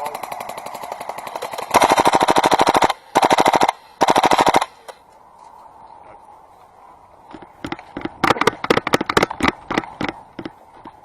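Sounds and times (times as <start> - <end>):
airsoft gun automatic fire: 0.0 - 4.9.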